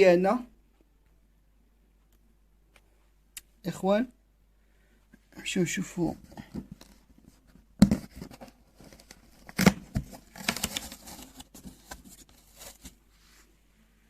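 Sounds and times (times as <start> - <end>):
sharp knocks on cardboard box: 7.8 - 8.3
cardboard and tape crinkling: 7.9 - 13.0.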